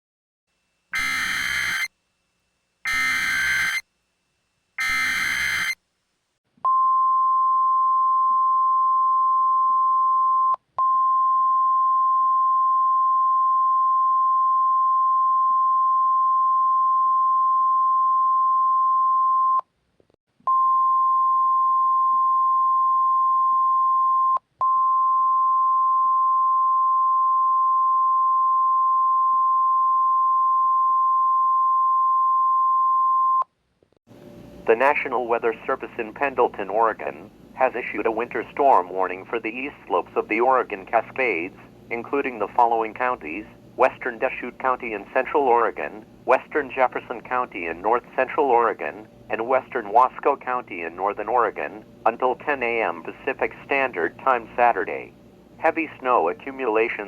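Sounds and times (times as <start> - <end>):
steady high warning tone: 0.9 - 1.9, 2.9 - 3.8, 4.8 - 5.8
warbling data tones: 1.0 - 1.9, 4.8 - 5.8.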